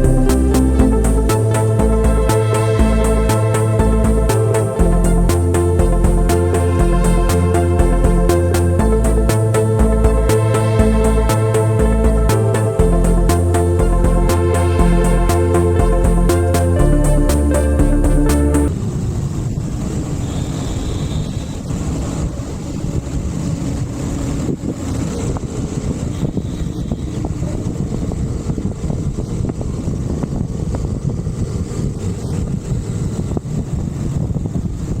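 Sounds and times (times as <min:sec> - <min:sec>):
background music: 0:00.0 - 0:18.7.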